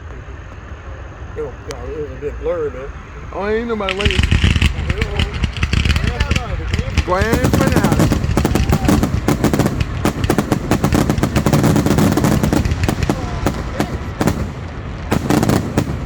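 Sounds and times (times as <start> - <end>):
fireworks bursts and crackles: 0.0 - 16.0.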